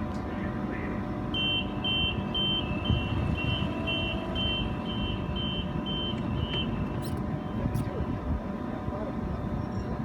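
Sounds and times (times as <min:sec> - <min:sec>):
engine and traffic rumble: 0:00.0 - 0:10.0
two-tone warning beeps: 0:01.3 - 0:07.7.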